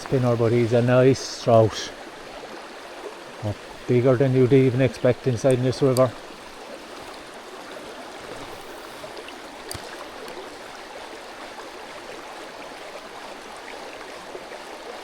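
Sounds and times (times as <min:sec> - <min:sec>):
mountain stream flowing: 0:00.0 - 0:15.0.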